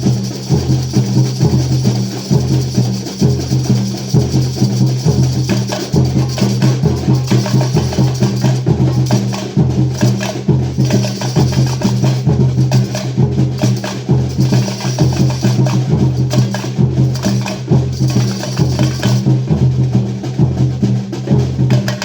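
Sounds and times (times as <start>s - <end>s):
percussion beat: 0.0s - 22.0s.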